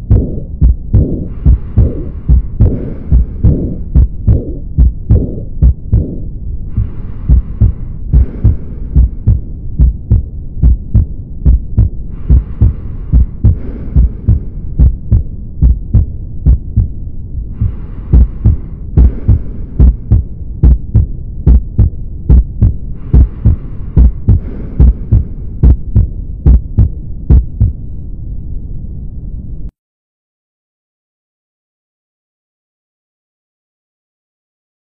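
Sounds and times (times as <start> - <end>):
heartbeat through stethoscope: 0.0 - 27.8.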